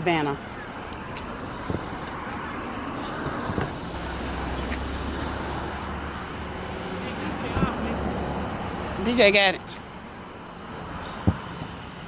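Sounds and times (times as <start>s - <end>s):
street traffic: 0.0s - 12.0s.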